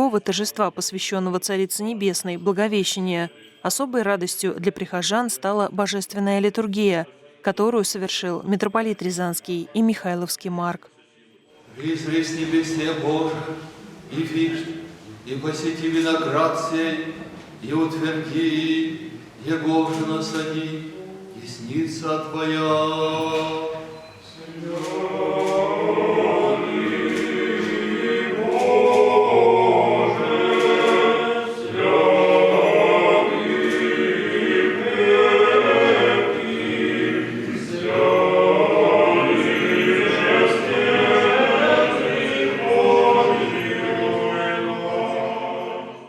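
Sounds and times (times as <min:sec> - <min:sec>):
choir singing a cappella: 0:10.9 - 0:46.0.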